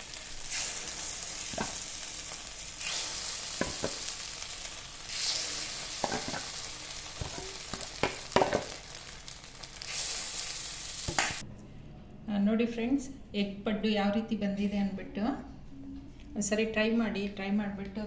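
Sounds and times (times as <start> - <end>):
batter sizzling in a pan: 0.0 - 11.4.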